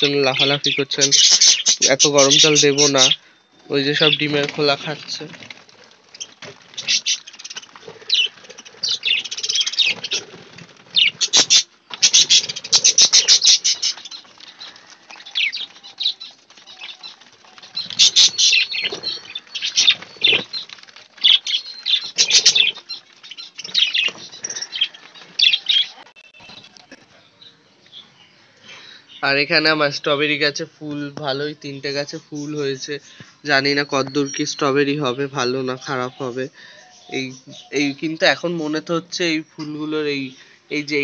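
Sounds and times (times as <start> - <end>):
small birds chirping: 0.0 - 41.0
wings flapping: 3.9 - 26.8.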